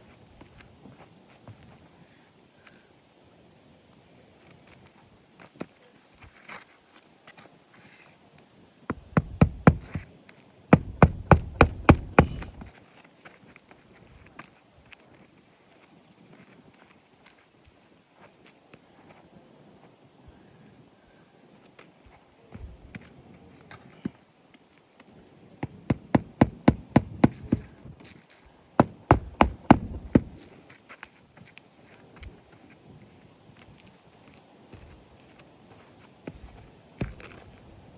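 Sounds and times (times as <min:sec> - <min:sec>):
hammer driving nails: 0:08.9 - 0:10.0, 0:10.8 - 0:12.7, 0:28.8 - 0:30.5.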